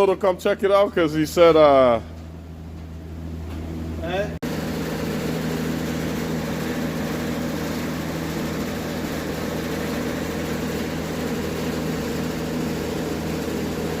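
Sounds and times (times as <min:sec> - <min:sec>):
heater humming: 0:00.0 - 0:14.0.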